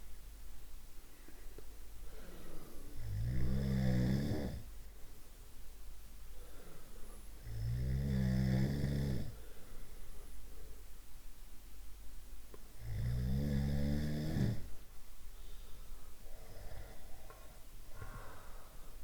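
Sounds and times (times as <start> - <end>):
person snoring: 3.0 - 4.6, 7.4 - 9.4.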